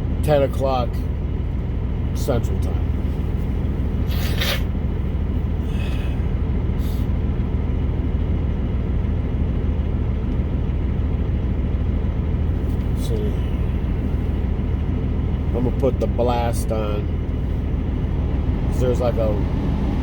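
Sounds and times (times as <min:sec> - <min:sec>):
diesel truck engine idling: 0:00.0 - 0:20.0
short hissing: 0:04.1 - 0:04.7.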